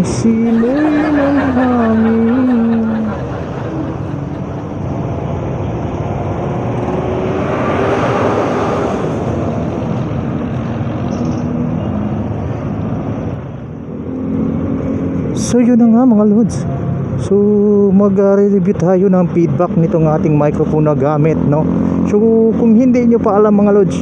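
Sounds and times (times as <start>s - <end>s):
motorcycle engine: 0.0s - 12.9s
traffic noise: 0.0s - 24.0s
wind rushing over microphone: 3.1s - 15.4s.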